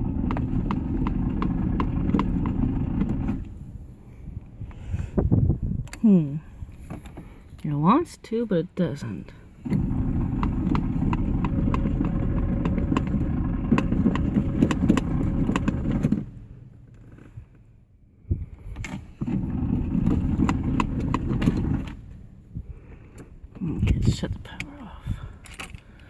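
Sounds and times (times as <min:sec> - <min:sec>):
starter solenoid chattering: 0:00.0 - 0:03.6, 0:09.6 - 0:16.4.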